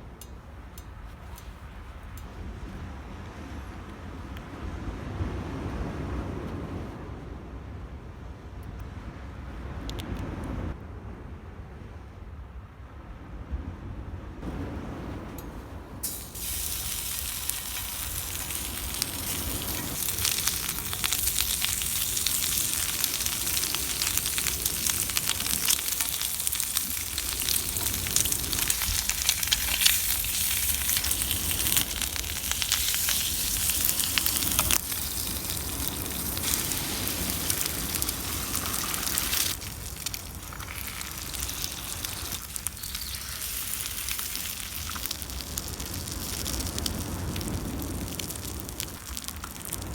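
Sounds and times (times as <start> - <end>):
food sizzling in a pan: 16.0 - 49.9.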